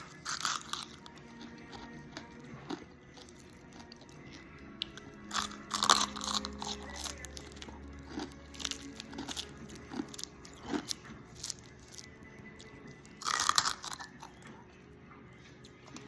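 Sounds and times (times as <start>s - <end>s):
crisp food crunching: 0.0s - 14.7s.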